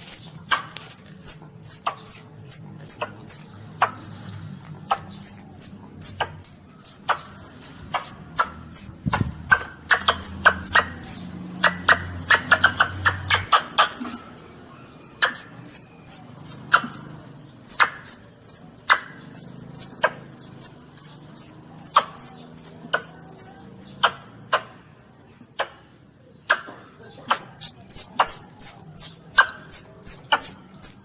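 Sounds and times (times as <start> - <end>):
high falling chirps: 0.0 - 3.5, 4.9 - 11.3, 14.9 - 24.0, 27.3 - 31.0
baby civet squeaking: 0.0 - 4.0, 4.8 - 14.1, 14.8 - 24.2, 27.3 - 31.0.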